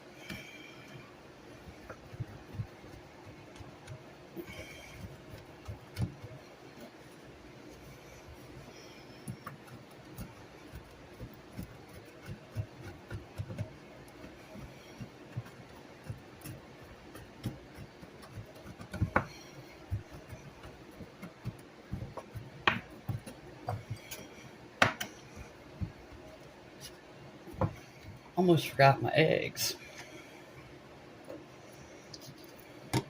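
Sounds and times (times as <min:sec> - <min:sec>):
knife chopping on cutting board: 0:01.8 - 0:06.4, 0:09.2 - 0:26.9, 0:27.5 - 0:27.9.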